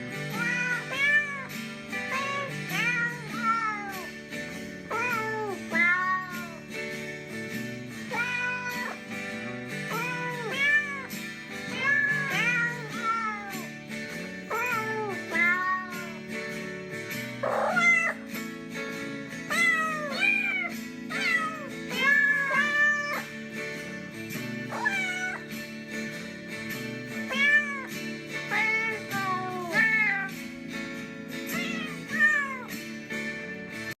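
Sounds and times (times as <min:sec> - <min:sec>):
backing music: 0:00.0 - 0:33.9
cat meows carrying a melody: 0:00.1 - 0:04.2, 0:04.8 - 0:06.8, 0:08.0 - 0:09.2, 0:09.8 - 0:13.8, 0:14.5 - 0:16.4, 0:17.4 - 0:18.3, 0:19.5 - 0:23.4, 0:24.7 - 0:25.6, 0:27.1 - 0:30.5, 0:31.4 - 0:32.9.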